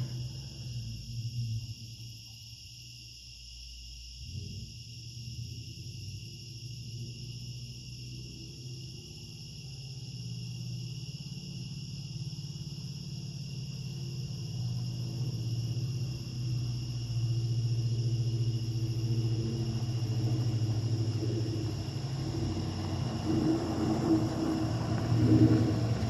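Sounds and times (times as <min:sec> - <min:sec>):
engine idling: 0:00.0 - 0:02.4, 0:10.1 - 0:26.0
crickets chirping: 0:00.0 - 0:26.0.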